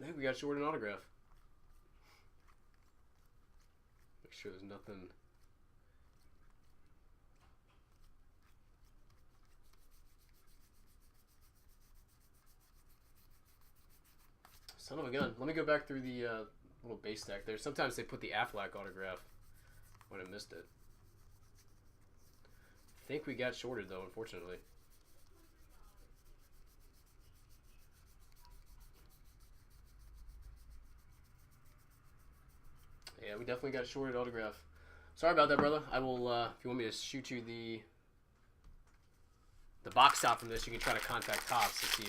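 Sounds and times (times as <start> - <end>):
trading cards rubbing together: 1.3 - 15.1, 17.1 - 33.3, 39.9 - 42.0
trading cards flicking: 39.9 - 42.0.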